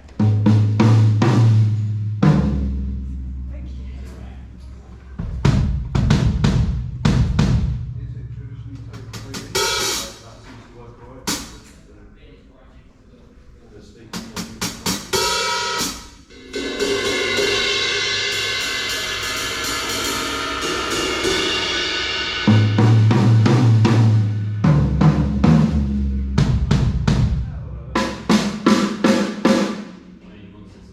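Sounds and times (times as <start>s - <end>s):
drum kit hits: 5.2s - 10.3s, 14.2s - 30.2s
ringing cymbal wash: 16.3s - 22.7s.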